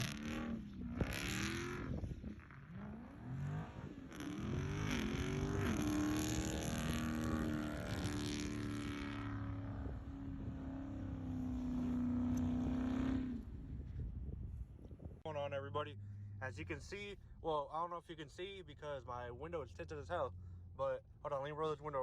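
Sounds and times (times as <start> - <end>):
car engine revving: 0.0 - 13.9.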